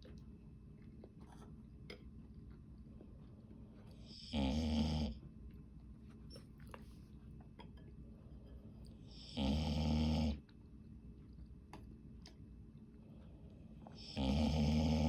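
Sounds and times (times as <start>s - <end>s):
dog snoring loudly: 4.2s - 5.2s, 9.2s - 10.4s, 14.0s - 15.0s.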